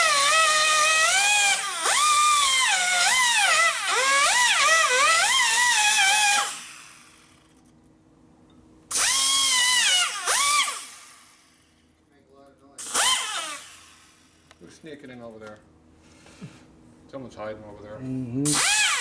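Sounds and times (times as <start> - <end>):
rotary power tool whining: 0.0 - 7.5, 8.9 - 11.6, 12.8 - 14.5, 18.4 - 19.0.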